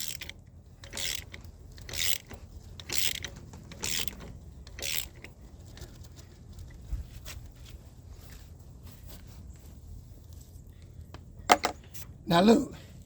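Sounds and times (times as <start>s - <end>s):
ratchet wrench clicking: 0.0s - 5.4s.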